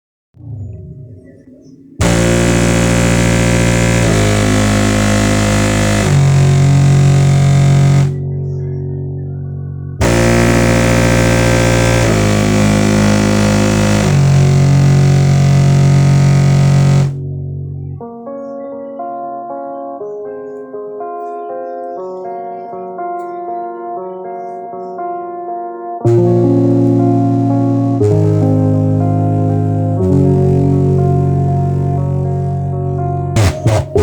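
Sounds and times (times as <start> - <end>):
synthesizer music with heavy bass: 0.4 - 8.6, 9.9 - 18.2, 26.1 - 34.0.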